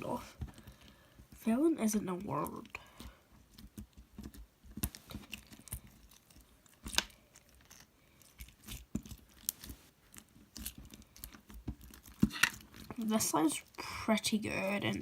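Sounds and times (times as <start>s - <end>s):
crunchy slime crackling and popping: 3.5s - 14.0s.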